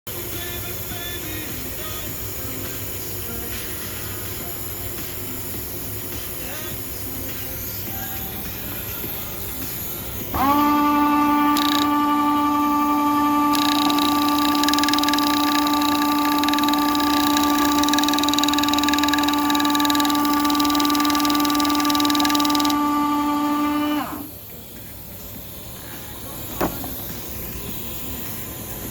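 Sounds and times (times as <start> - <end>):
machine motor whining: 10.3 - 24.9
sharp click: 11.5 - 12.0, 13.5 - 22.8.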